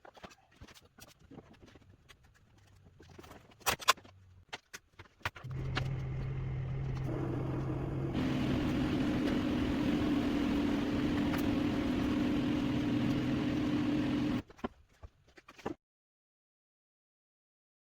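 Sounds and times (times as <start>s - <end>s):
motor humming: 5.4s - 14.4s.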